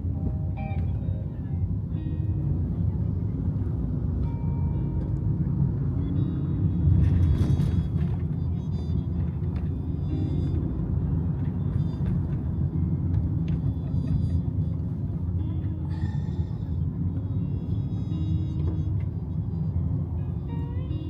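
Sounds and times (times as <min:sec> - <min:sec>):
steady low rumble: 0:00.0 - 0:21.0.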